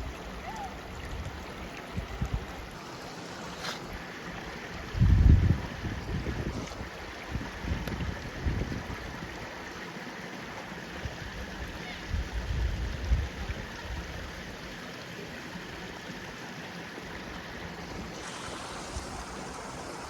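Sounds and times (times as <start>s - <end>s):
stream water rushing: 0.0s - 20.0s
wind buffeting microphone: 4.9s - 9.4s.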